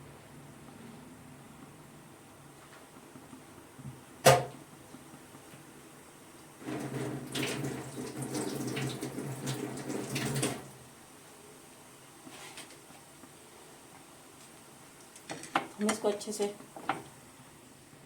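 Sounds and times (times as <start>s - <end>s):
sharp knock: 4.2s - 4.5s
water running into a vessel: 6.6s - 10.9s.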